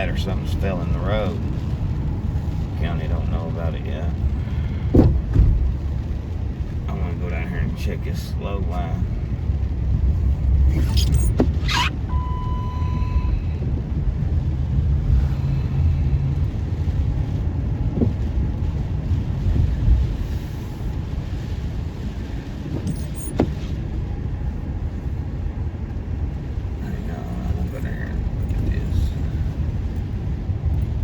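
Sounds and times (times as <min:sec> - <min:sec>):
car engine and road noise: 0:00.0 - 0:31.0
short steady beep: 0:12.1 - 0:13.3.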